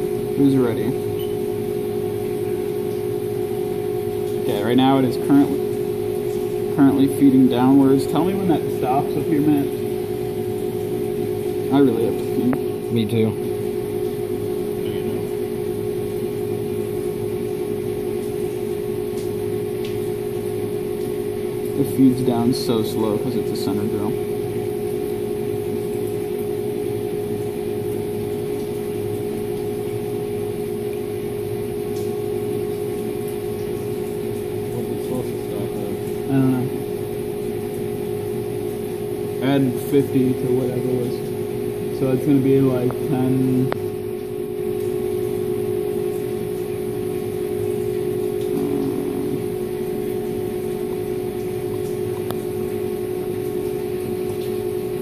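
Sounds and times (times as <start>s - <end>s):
milling machine humming: 0.0s - 55.0s
spindle whine: 46.5s - 52.8s
milling machine whining: 48.3s - 50.8s.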